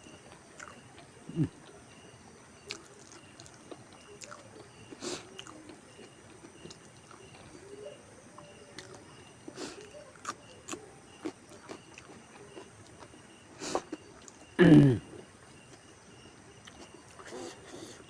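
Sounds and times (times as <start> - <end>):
food being chewed: 0.0 - 2.0, 2.6 - 7.8, 8.4 - 15.9, 16.6 - 18.0.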